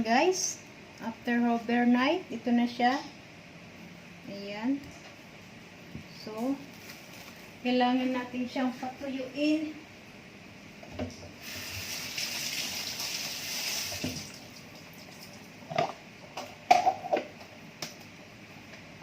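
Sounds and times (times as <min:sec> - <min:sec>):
water running: 0:11.4 - 0:15.6.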